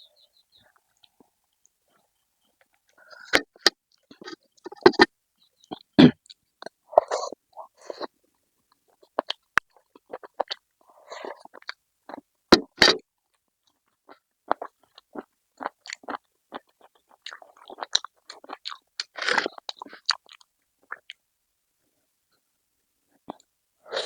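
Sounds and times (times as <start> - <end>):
person chewing and crunching food: 0.9 - 8.1, 8.7 - 21.2.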